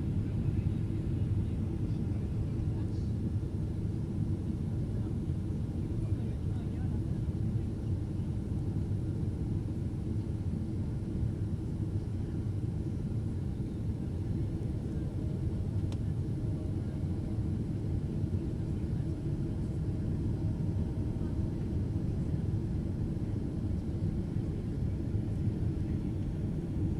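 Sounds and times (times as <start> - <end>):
jet airliner cabin rumble: 0.0 - 26.9
faint click: 15.8 - 16.1.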